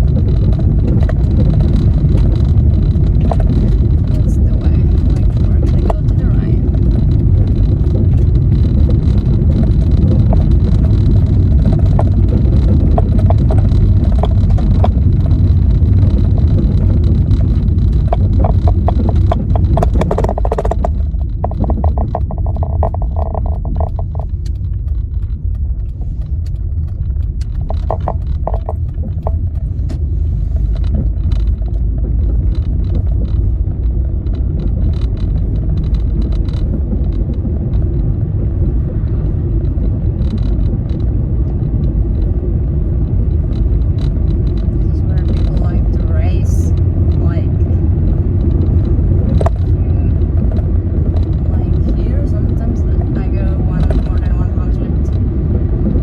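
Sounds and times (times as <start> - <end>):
car road and engine rumble: 0.0 - 56.0
clicks or rattles: 0.0 - 56.0.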